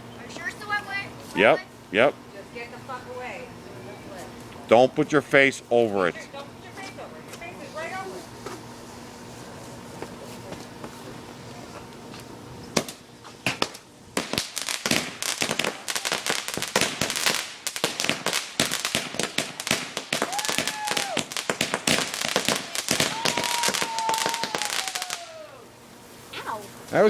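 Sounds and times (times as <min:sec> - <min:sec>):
firework crackling pops: 0:12.7 - 0:25.4
firework bang: 0:12.8 - 0:25.2.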